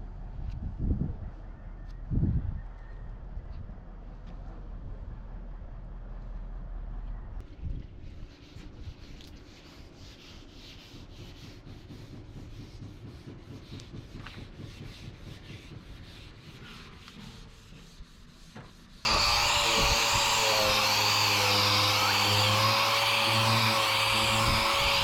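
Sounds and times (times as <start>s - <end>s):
hand sanding strokes: 8.0s - 25.0s
power tool running: 19.1s - 25.0s.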